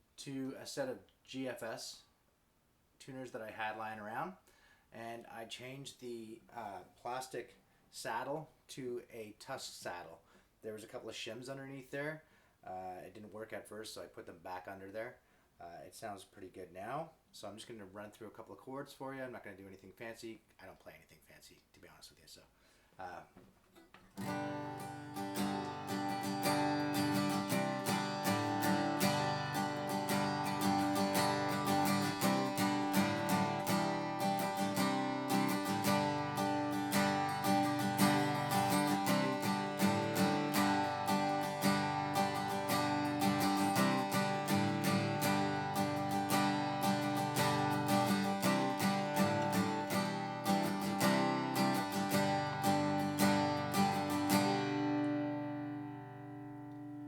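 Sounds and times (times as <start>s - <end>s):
acoustic guitar strummed chords: 23.8s - 57.0s.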